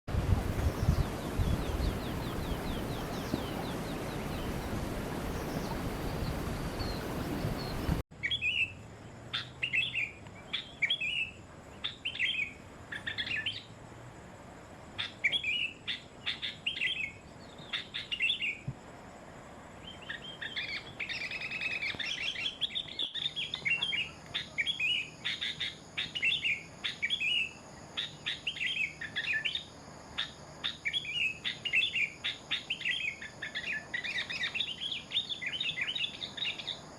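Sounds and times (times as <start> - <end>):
songbird chirping: 0.3 - 36.9.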